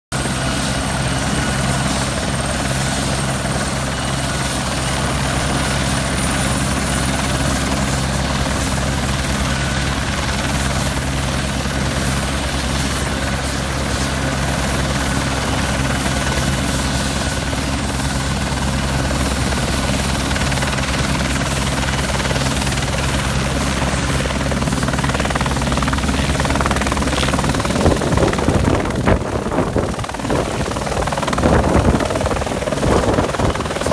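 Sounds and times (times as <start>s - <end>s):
helicopter rotor beat: 0.1s - 33.9s
high turbine whine: 0.2s - 33.9s.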